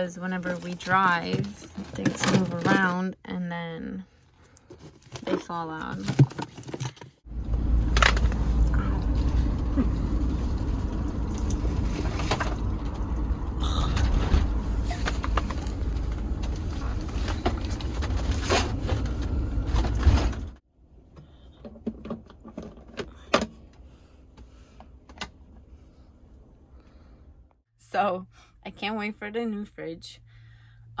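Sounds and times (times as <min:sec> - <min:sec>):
loose items rattling: 0:00.2 - 0:03.1, 0:04.6 - 0:07.2
van road noise rumble: 0:07.2 - 0:31.0.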